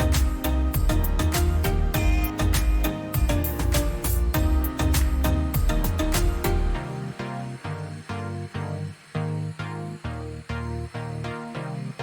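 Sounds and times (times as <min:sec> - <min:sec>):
background music with beat: 0:00.0 - 0:07.6.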